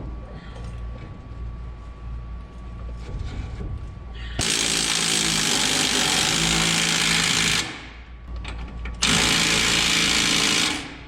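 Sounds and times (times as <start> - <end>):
power tool running: 4.4 - 8.0, 9.0 - 11.0.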